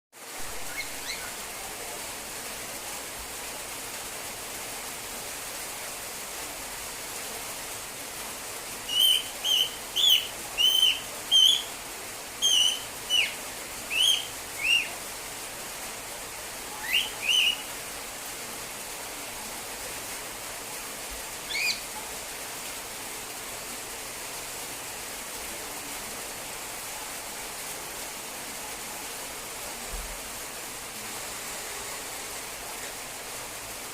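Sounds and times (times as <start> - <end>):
steady hiss: 0.2 - 33.9
cockatiel calling: 0.6 - 1.4, 8.9 - 11.7, 12.4 - 15.0, 16.8 - 17.7, 21.5 - 21.8.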